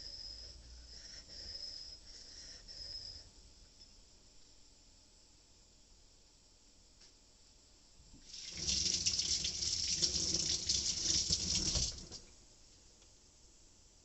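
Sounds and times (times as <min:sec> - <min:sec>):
water pouring: 0:08.2 - 0:12.2.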